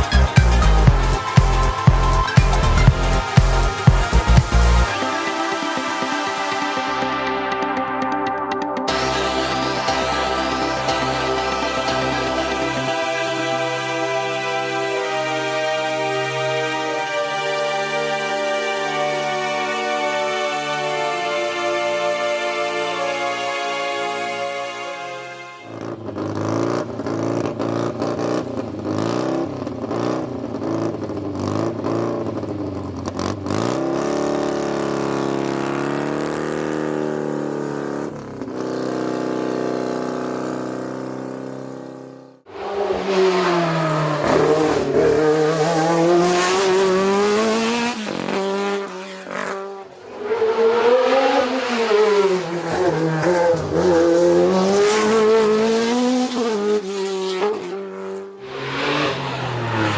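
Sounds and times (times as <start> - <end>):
race car engines revving: 8.9 - 59.9
car engine through the gears: 25.6 - 59.9.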